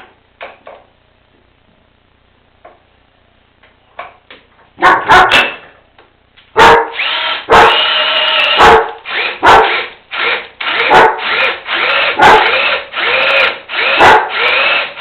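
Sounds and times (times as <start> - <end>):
dog barking loudly: 4.8 - 5.5, 6.6 - 7.9, 8.5 - 9.8, 10.8 - 11.2, 12.2 - 12.6, 13.9 - 14.4.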